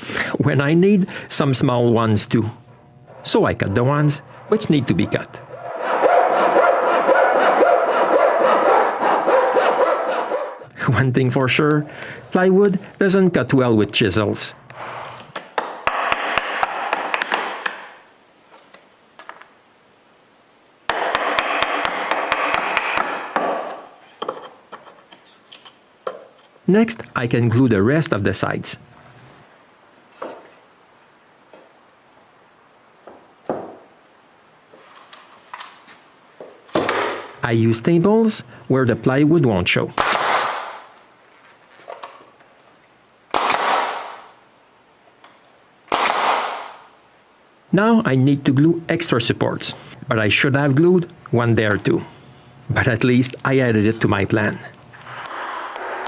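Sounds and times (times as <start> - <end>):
chisel striking plywood: 20.9 - 24.4
staple gun shot: 36.8 - 37.3, 40.0 - 40.8, 43.3 - 44.2, 45.9 - 46.8.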